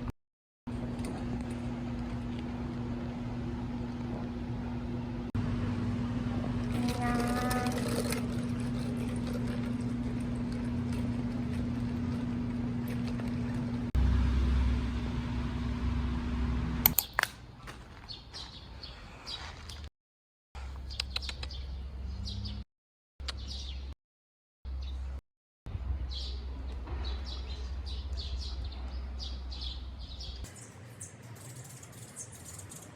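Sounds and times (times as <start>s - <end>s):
mechanical hum with low rumble: 0.7s - 18.1s, 25.0s - 32.9s
street background: 0.7s - 19.9s, 20.6s - 22.6s, 23.2s - 24.0s, 24.7s - 32.9s
birds chirping: 20.8s - 22.6s, 23.2s - 24.0s, 26.0s - 32.9s.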